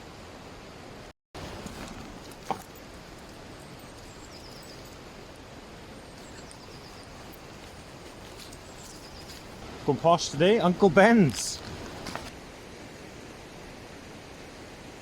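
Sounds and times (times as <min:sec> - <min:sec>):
water rushing in stream: 0:01.4 - 0:15.0
faint high bird chirps: 0:03.6 - 0:09.6.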